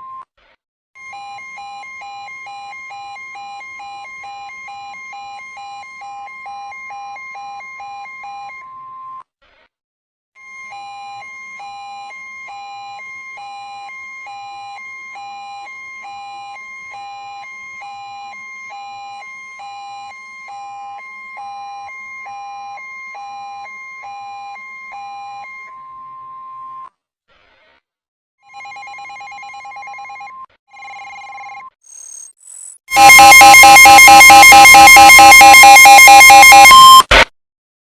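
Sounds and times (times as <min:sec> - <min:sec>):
warbling alarm: 0:32.9 - 0:37.1
electronic alarm tone: 0:32.9 - 0:37.2.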